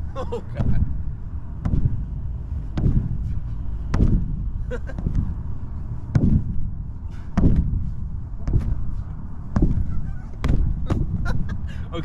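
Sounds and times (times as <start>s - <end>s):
steady low rumble: 0.0s - 12.0s
heavy thumps of bouncing: 1.6s - 2.1s, 2.7s - 3.3s, 3.9s - 5.4s, 6.0s - 11.5s.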